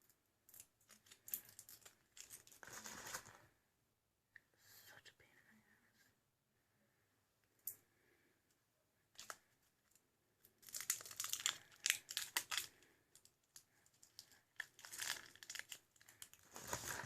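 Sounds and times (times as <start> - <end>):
wrapping crinkling and tearing: 0.5 - 3.4, 9.1 - 17.0.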